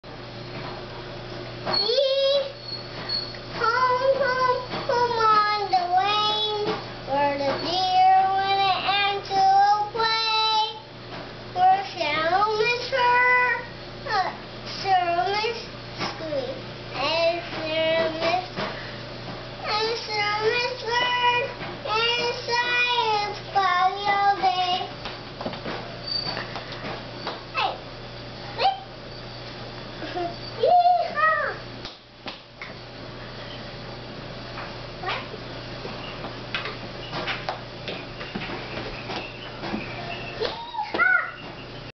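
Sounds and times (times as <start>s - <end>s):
steady low hum: 0.1s - 41.9s
child singing: 3.6s - 10.9s, 11.6s - 18.5s, 19.6s - 24.9s.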